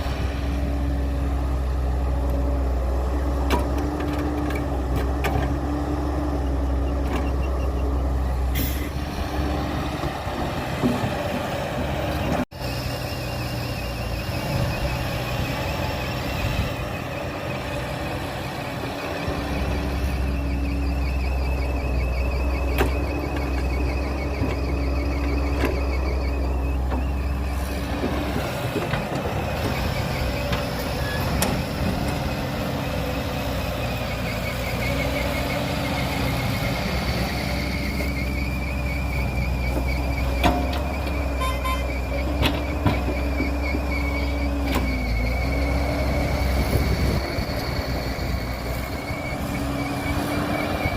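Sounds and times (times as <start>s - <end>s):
low diesel engine rumble: 0.0s - 50.9s.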